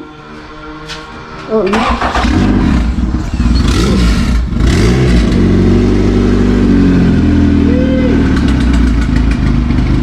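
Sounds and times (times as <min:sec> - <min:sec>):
car engine running: 0:02.1 - 0:10.0.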